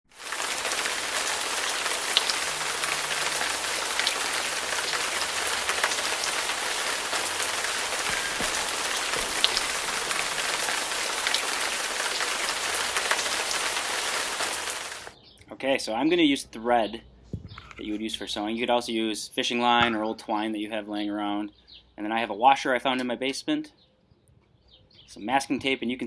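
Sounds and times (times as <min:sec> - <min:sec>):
rain falling: 0:00.0 - 0:15.2
drips ticking: 0:00.1 - 0:15.1.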